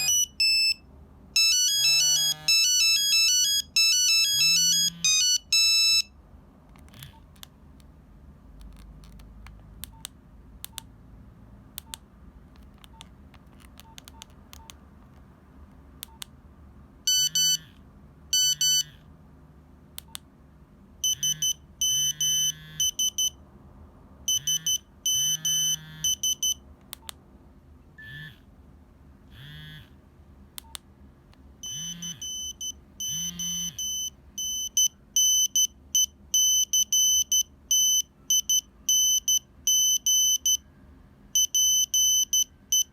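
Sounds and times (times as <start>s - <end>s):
monophonic phone ringtone: 0.0s - 0.8s, 1.4s - 6.1s, 17.1s - 17.6s, 18.3s - 18.9s, 21.0s - 23.3s, 24.3s - 26.6s, 31.6s - 35.7s
short beeping tones: 0.0s - 0.8s, 1.4s - 6.1s, 17.1s - 17.6s, 18.4s - 18.9s, 21.0s - 23.4s, 24.3s - 26.6s, 31.6s - 40.7s, 41.4s - 42.9s
soft clicks: 8.6s - 10.9s, 11.8s - 16.4s, 20.0s - 20.3s, 30.6s - 31.5s.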